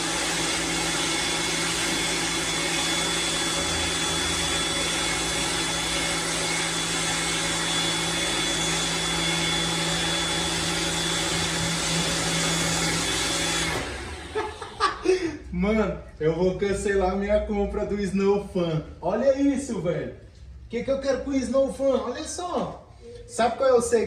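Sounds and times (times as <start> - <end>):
pressure washer running: 0.0 - 14.9.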